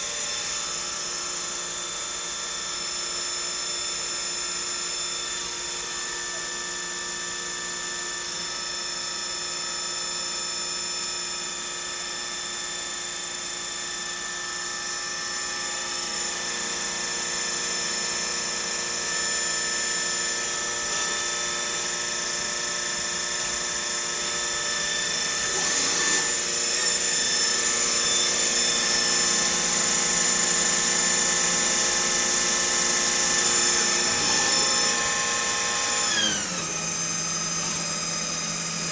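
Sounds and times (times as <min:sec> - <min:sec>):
lathe whining: 0:14.1 - 0:38.9.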